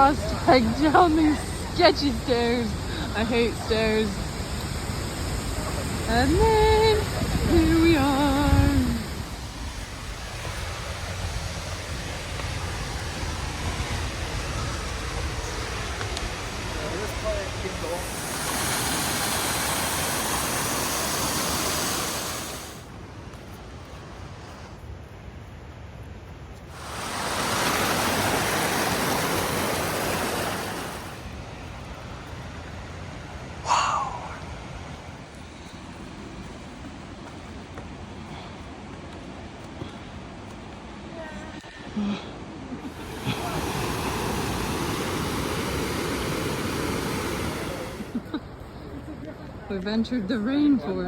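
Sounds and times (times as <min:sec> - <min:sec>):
waterfall roaring: 0:00.0 - 0:23.2, 0:26.7 - 0:34.6, 0:42.8 - 0:48.4.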